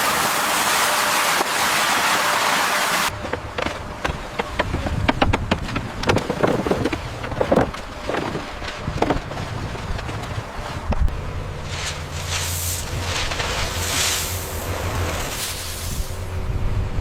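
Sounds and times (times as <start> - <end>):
low machine rumble: 0.0 - 17.0.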